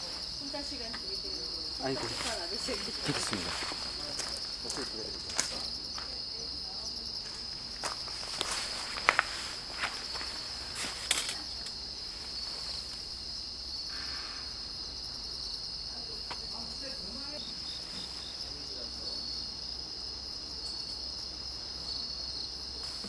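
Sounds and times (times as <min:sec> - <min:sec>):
crickets trilling: 0:00.0 - 0:23.0.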